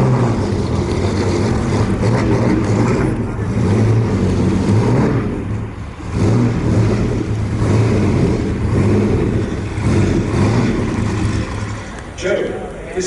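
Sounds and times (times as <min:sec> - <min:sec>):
car engine running: 0:00.0 - 0:12.8.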